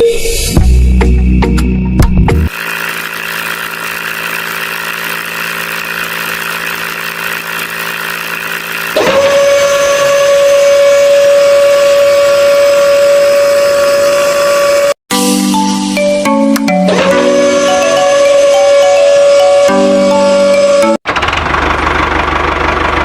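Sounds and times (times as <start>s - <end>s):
small motor running: 2.5s - 15.0s, 16.9s - 21.0s
high-pitched whine: 8.9s - 15.0s, 16.9s - 21.0s.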